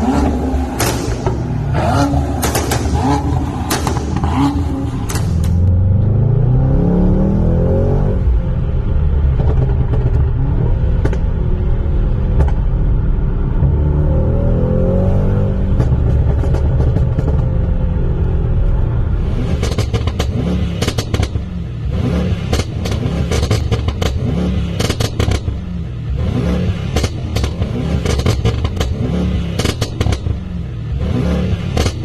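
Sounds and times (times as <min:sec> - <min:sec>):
car engine revving: 0:00.0 - 0:32.0
exhaust crackles and pops: 0:02.3 - 0:05.7, 0:09.2 - 0:13.0, 0:15.6 - 0:18.4.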